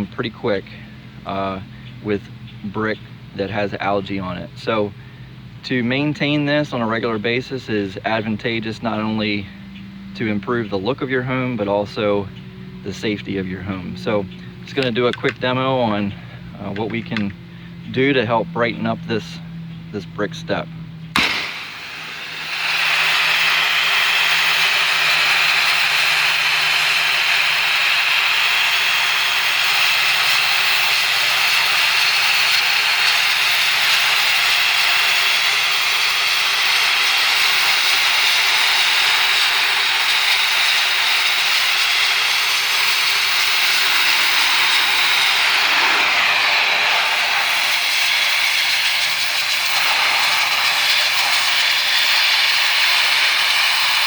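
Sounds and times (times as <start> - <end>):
pressure washer spraying: 21.2 - 54.0.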